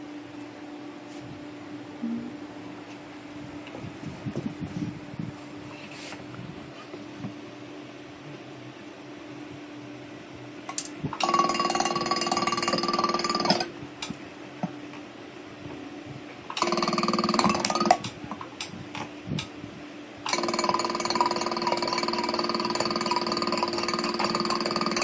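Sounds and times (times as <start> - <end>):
steady machine hum: 0.0 - 25.0
welding machine buzzing and crackling: 10.7 - 14.2, 16.4 - 19.5, 20.2 - 25.0.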